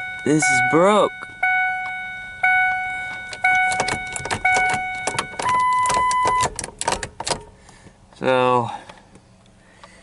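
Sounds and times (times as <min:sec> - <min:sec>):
car warning chime dinging: 0:00.0 - 0:07.6
shifter parts clicking and rattling: 0:02.9 - 0:08.0.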